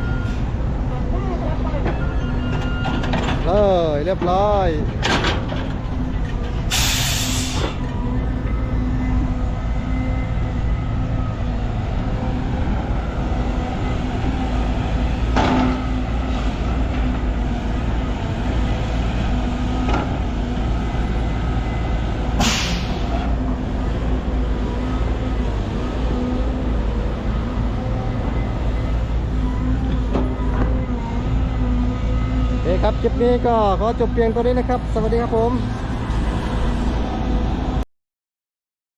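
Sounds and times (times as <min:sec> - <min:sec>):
air brake hissing: 0:06.7 - 0:07.8, 0:22.4 - 0:23.1.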